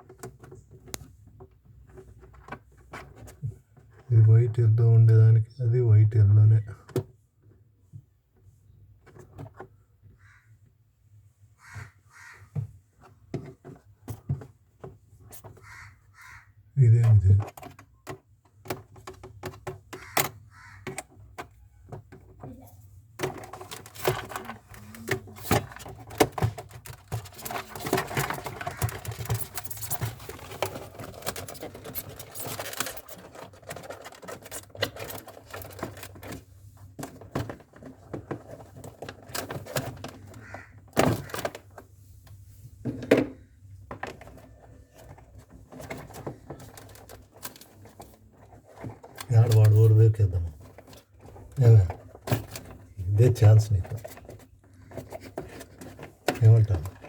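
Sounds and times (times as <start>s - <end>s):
small parts and tools rattling: 17.2s - 57.0s.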